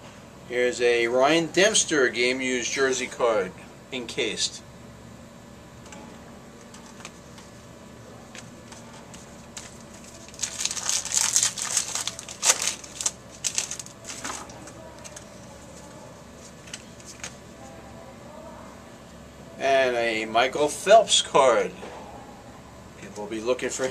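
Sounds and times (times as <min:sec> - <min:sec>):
wrapper crinkling: 0:09.1 - 0:17.4.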